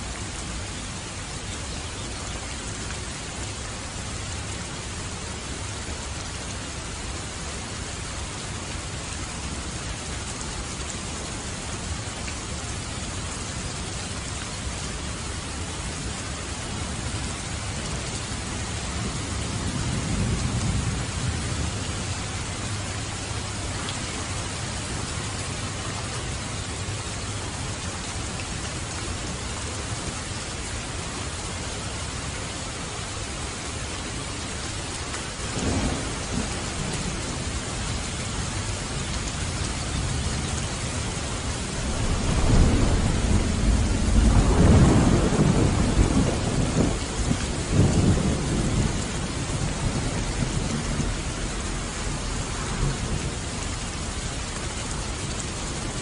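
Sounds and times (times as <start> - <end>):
steady rain: 0.0 - 56.0
thunder rumbling: 35.4 - 38.1, 41.4 - 53.6.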